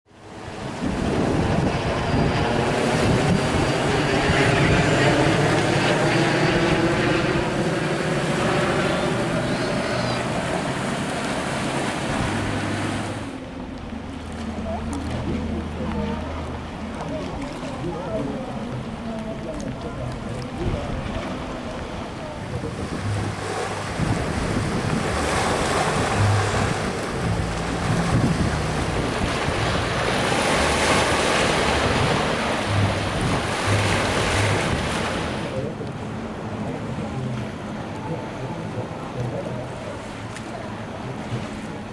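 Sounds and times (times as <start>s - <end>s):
propeller aircraft engine drone: 0.1s - 17.4s, 21.6s - 37.2s
wind buffeting microphone: 0.4s - 13.3s, 14.7s - 35.6s.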